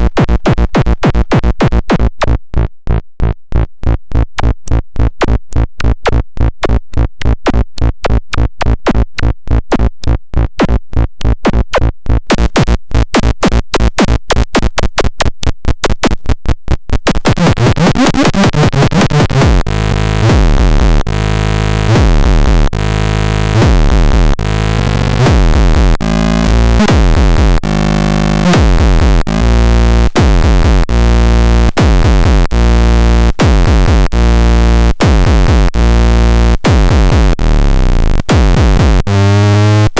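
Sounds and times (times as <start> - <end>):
sustained bass: 17.4 - 39.9
electronic pulse: 17.5 - 39.9.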